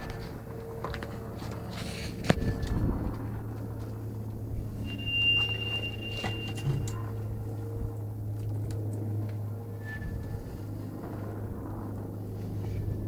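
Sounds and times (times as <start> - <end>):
steady low drone: 0.0 - 13.0
high-pitched screech: 4.8 - 7.0.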